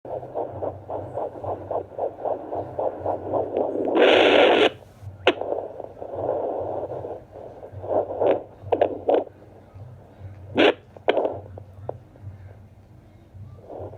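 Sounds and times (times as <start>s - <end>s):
loud burst of noise: 0.1s - 9.3s
doppler heartbeat whooshing pulse: 0.1s - 11.6s.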